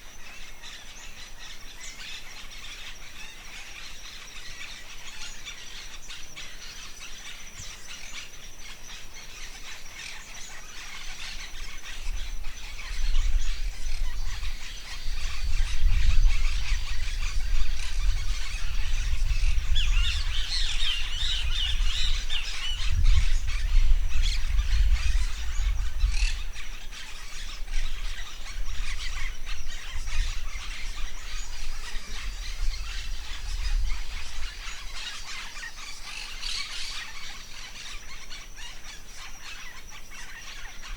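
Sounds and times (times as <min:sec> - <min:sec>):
forest birds chirping: 0:00.0 - 0:40.9
wind buffeting microphone: 0:11.4 - 0:37.9.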